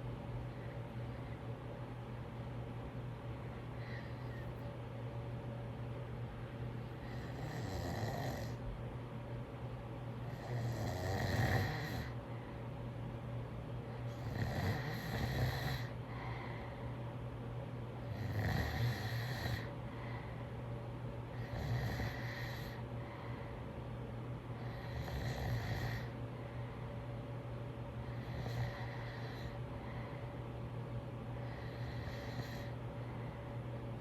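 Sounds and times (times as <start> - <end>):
person snoring: 7.0 - 8.6, 10.3 - 12.2, 14.1 - 16.0, 18.1 - 19.7, 21.4 - 22.8, 24.6 - 26.2, 31.4 - 32.8.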